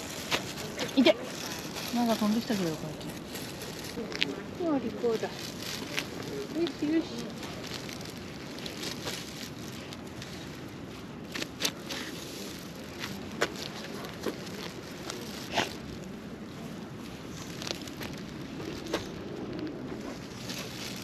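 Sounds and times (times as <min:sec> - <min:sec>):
footsteps clicking and crunching: 0:00.0 - 0:04.5, 0:05.1 - 0:16.1
outdoor background noise: 0:00.0 - 0:21.0.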